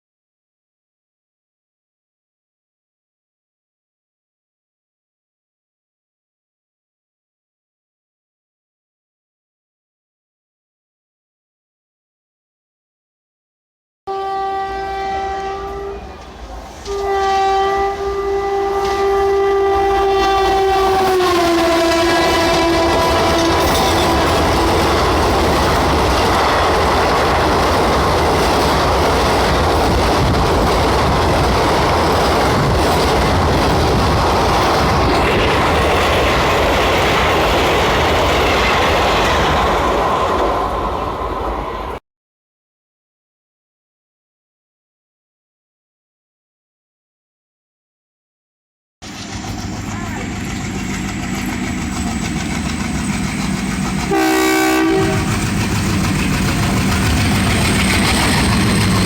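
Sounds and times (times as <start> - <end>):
train horn blasts: 14.1 - 25.6, 54.1 - 55.6
train coaches clattering over rails: 18.7 - 41.8, 49.0 - 59.0.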